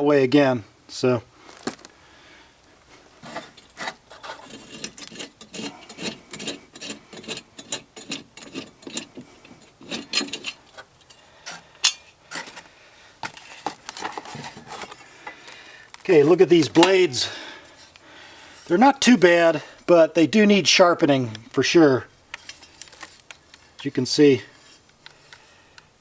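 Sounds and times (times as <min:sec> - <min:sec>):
metal clinks and knocks: 0:01.6 - 0:02.0, 0:03.2 - 0:12.6.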